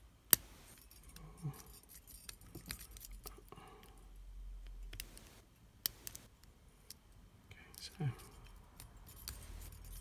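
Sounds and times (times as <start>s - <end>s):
lock pick clicking and scratching: 0.3s - 3.4s, 7.8s - 10.0s.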